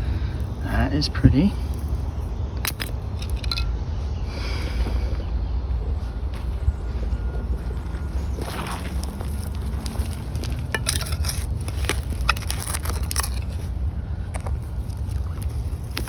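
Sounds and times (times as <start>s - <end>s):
wind rumble on microphone: 0.0s - 16.0s
digging with glass crunching: 8.3s - 13.8s.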